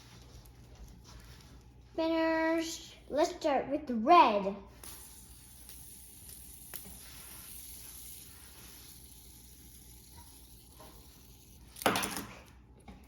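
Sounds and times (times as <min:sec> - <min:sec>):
fidget spinner whirring: 0:04.7 - 0:12.8.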